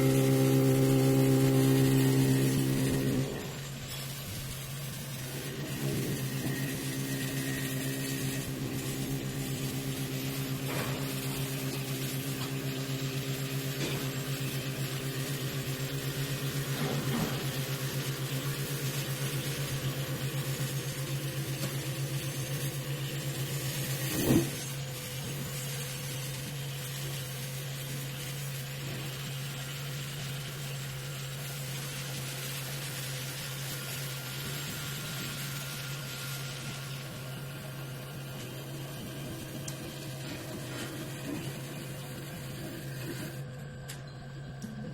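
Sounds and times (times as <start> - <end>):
higher machine tones: 0.0 - 23.2
wood lathe machine hum: 0.0 - 43.6.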